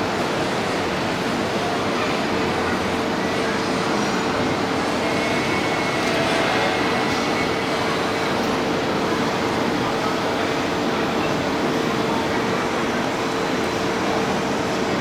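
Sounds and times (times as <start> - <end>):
model machine motor hum: 6.0 - 14.3.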